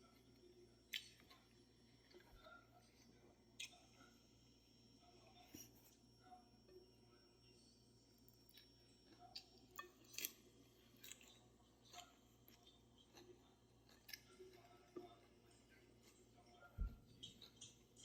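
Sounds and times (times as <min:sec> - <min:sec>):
open-mouthed chewing: 0:08.3 - 0:16.5.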